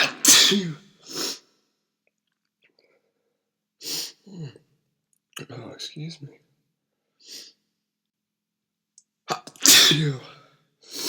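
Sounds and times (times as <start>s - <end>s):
man sneezing: 0.0s - 1.4s, 9.6s - 10.4s.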